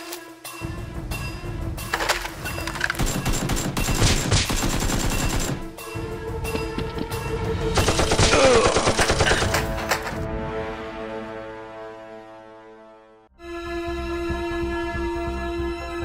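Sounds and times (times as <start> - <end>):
background music: 0.0 - 16.0
rapid machine-gun fire: 3.0 - 5.7, 7.8 - 9.8.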